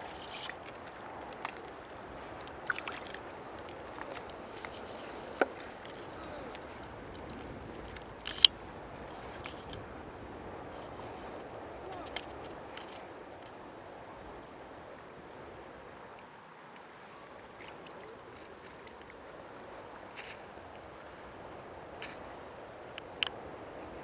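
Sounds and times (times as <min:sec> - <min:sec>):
sharp clicks: 0:07.8 - 0:09.9.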